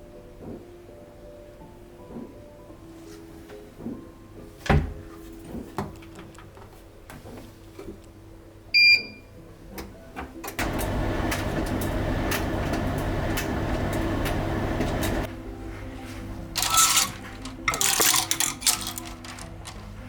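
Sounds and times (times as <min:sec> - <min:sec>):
soft background music: 0:00.0 - 0:13.4, 0:15.2 - 0:20.0
appliance beep: 0:08.8 - 0:09.3, 0:10.6 - 0:15.3
appliance whirring and humming: 0:10.4 - 0:15.4
handling clicks and knocks: 0:16.6 - 0:20.0.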